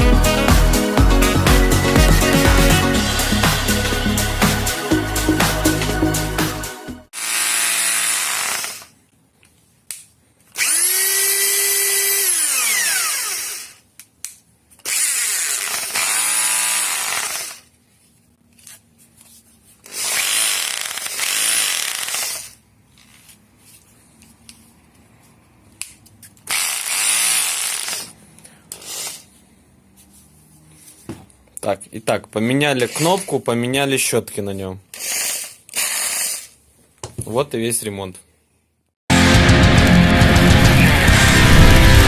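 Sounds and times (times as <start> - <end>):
rotary hammer motor spinning: 7.2 - 8.9, 10.6 - 13.8, 14.8 - 17.7, 19.8 - 22.6, 26.5 - 29.3, 32.8 - 33.4, 34.9 - 36.6.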